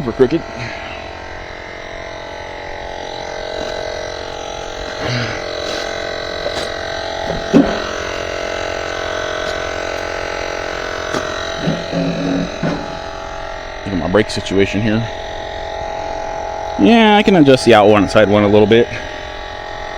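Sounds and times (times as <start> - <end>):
tire inflator motor hum: 0.0 - 19.9
short knocks: 5.8 - 8.2, 11.1 - 13.1.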